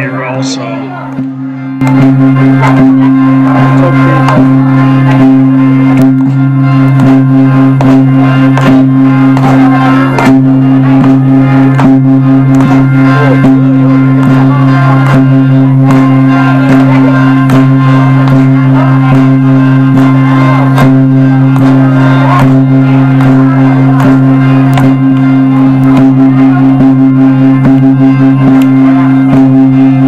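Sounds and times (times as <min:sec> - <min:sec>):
folk music with drone: 0:00.0 - 0:30.0
percussive beat: 0:00.0 - 0:30.0.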